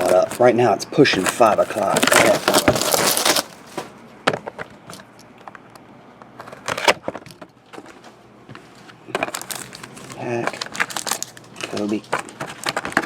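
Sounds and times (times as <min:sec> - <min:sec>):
packaging tearing: 0:01.2 - 0:03.9, 0:09.2 - 0:13.0.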